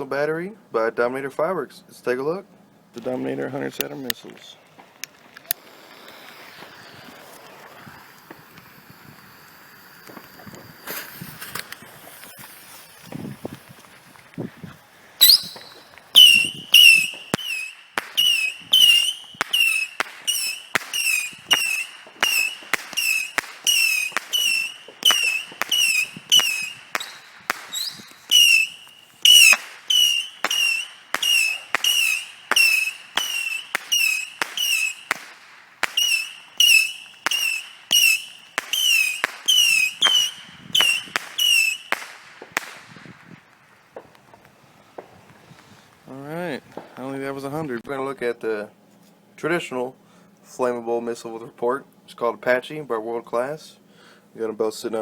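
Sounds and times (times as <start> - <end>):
whistling rockets with sharp reports: 4.4 - 45.9.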